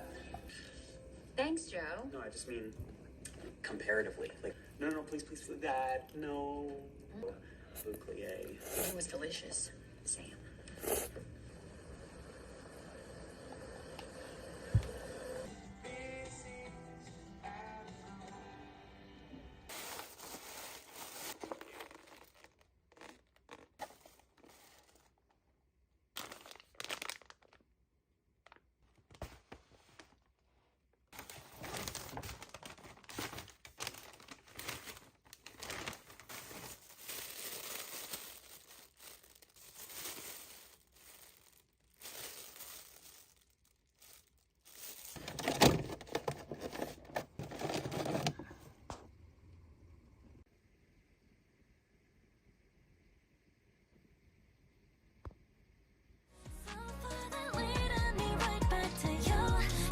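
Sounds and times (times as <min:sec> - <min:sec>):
rustling and crinkling of material: 0:19.7 - 0:25.4, 0:26.1 - 0:27.7, 0:28.3 - 0:49.0.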